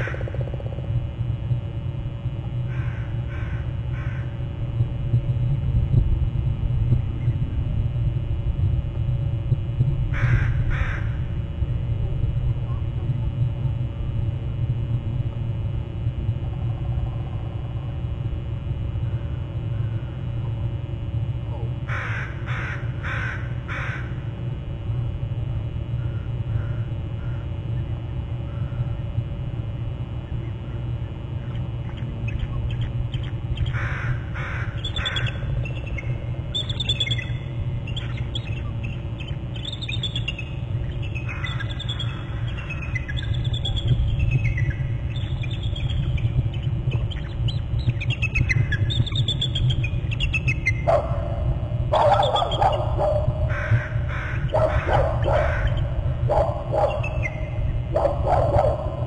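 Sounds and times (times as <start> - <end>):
crows cawing: 0.0 - 0.4, 2.7 - 4.4, 10.1 - 11.3, 21.9 - 24.2, 26.0 - 27.5, 33.6 - 35.5, 41.2 - 43.0, 52.0 - 57.2
steady low hum: 0.0 - 59.0.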